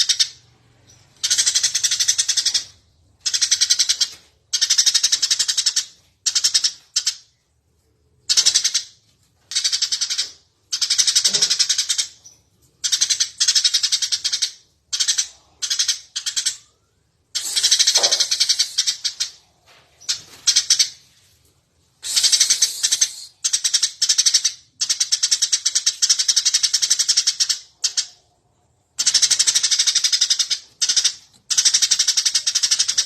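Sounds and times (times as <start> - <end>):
sparrow chirping: 0.0 - 7.1, 17.4 - 21.1, 22.0 - 28.2, 29.0 - 33.0.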